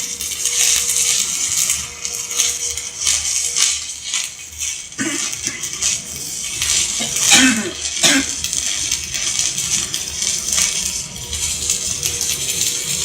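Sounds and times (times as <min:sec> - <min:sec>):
welding arc crackling hiss: 0:00.0 - 0:13.0.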